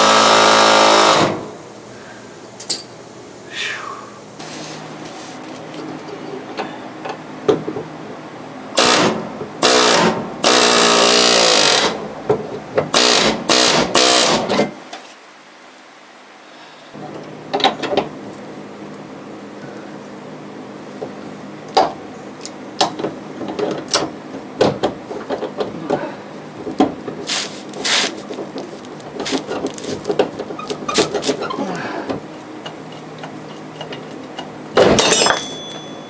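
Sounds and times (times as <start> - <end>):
tools knocking and scraping metal: 28.3 - 36.0
loud metallic clang: 34.8 - 36.0.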